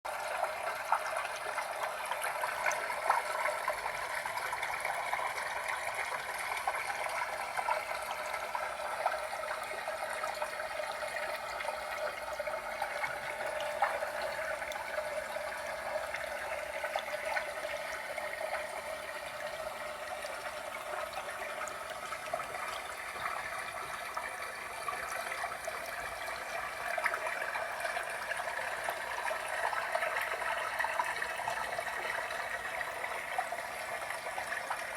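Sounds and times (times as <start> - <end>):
fountain water trickling: 0.1 - 34.9
water dripping: 0.8 - 24.4.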